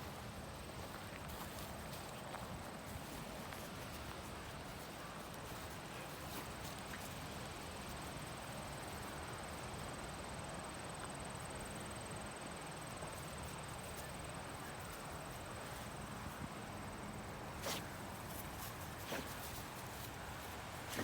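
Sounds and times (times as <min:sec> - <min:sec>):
short sharp rustle: 0:17.4 - 0:21.0.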